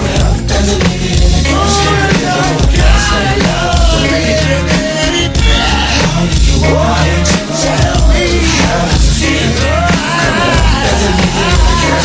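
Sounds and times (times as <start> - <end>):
hip-hop song with deep bass: 0.0 - 12.0.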